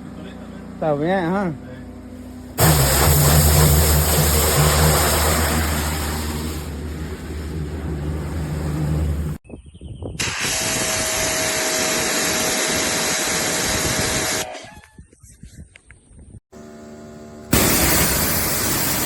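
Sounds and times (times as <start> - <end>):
pressure washer engine running: 2.4 - 9.4, 17.5 - 19.0
water spray hissing: 2.6 - 9.4, 17.5 - 19.0.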